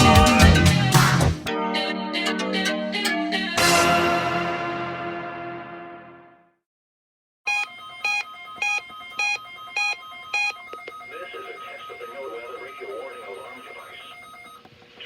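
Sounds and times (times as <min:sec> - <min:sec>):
music: 0:00.0 - 0:06.6.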